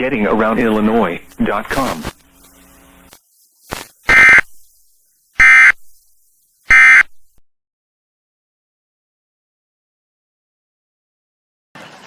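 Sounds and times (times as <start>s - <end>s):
buzzy digital data tones: 0.5s - 7.4s.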